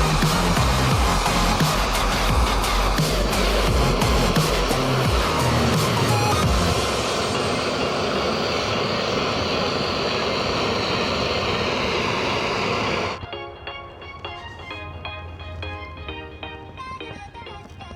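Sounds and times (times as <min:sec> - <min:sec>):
gas torch flame rushing: 0:00.0 - 0:13.2.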